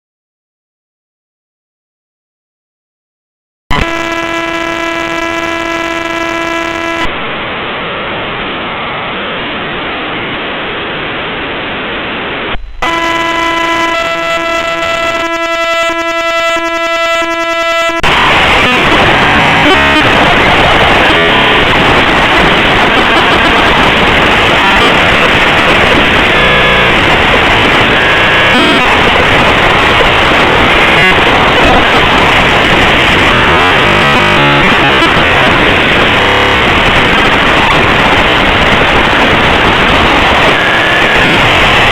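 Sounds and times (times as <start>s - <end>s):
stuttering buzz: 3.7s - 7.2s, 12.2s - 41.9s
dense loud crackling noise: 3.7s - 41.9s
steady buzzing tone: 3.7s - 41.9s.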